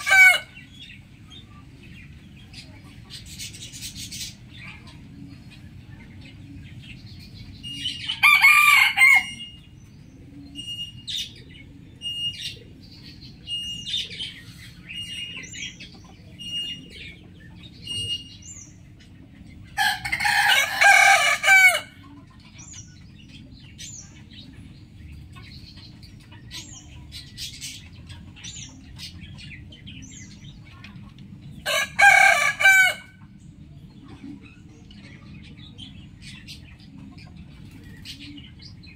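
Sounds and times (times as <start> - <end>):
bird calls and chirps: 0.0 - 38.9
rooster crowing: 8.1 - 9.5, 19.8 - 21.9, 31.7 - 33.2.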